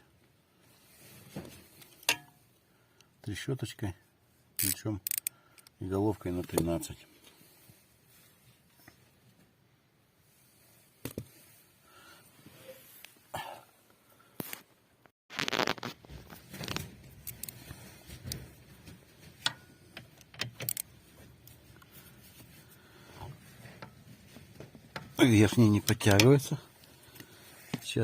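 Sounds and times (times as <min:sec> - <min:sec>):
ratchet clicking and scraping: 0:04.6 - 0:05.7, 0:17.2 - 0:17.6, 0:19.4 - 0:21.0.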